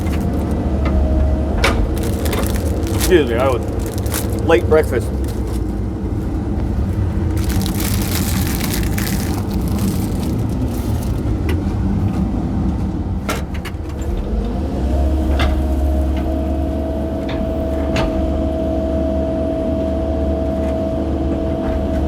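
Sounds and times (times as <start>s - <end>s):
mini excavator engine running: 0.0s - 18.6s
bucket scraping through wood: 1.9s - 5.8s, 7.3s - 11.4s.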